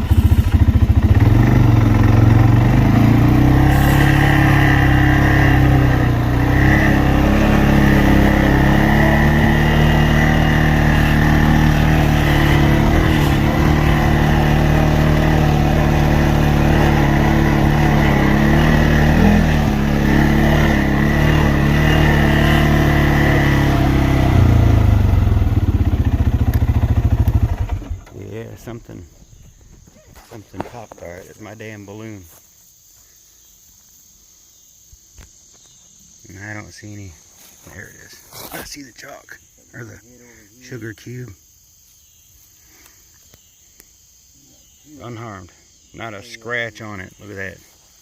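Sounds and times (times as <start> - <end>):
vehicle engine running: 0.0 - 29.6.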